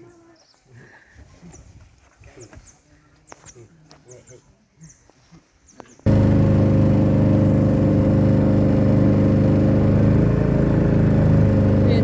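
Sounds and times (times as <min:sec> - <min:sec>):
engine running steadily: 0:06.1 - 0:12.0.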